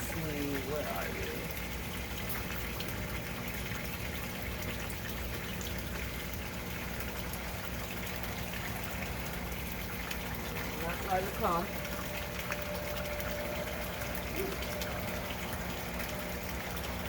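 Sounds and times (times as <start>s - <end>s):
low pump hum: 0.0s - 17.0s
water rushing in a tank: 0.0s - 17.0s.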